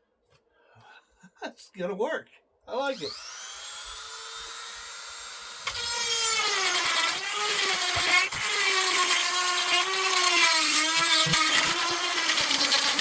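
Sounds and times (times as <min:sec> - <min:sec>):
electric power tool cutting steel: 0:02.9 - 0:13.0.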